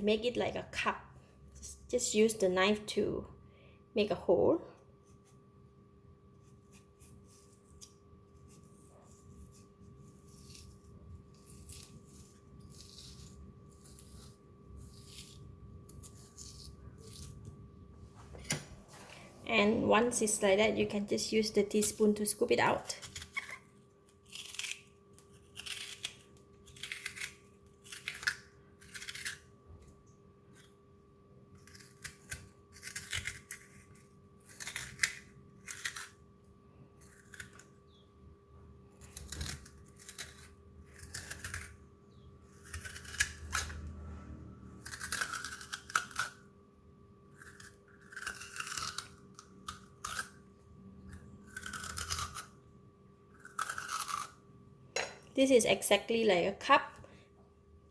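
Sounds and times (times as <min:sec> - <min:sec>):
teaspoon scraping radish flesh: 0:06.3 - 0:17.6, 0:21.7 - 0:29.5, 0:31.5 - 0:36.2, 0:38.9 - 0:41.8, 0:42.5 - 0:43.8, 0:47.3 - 0:52.6.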